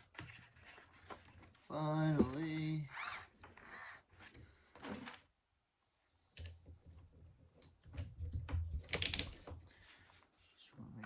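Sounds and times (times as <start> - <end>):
small clicks and knocks of parts: 6.3 - 9.7.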